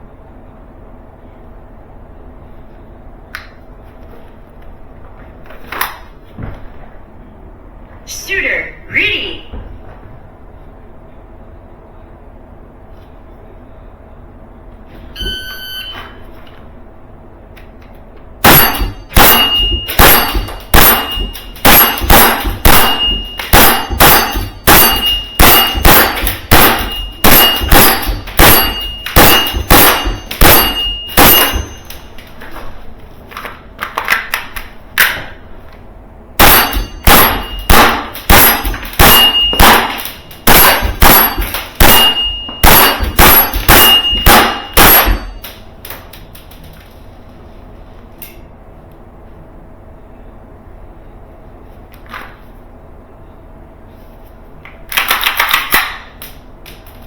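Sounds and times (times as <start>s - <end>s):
high ringing: 15.2s - 16.2s, 18.4s - 32.4s, 36.4s - 45.7s
airsoft pistol shots: 18.4s - 31.9s, 36.4s - 45.4s.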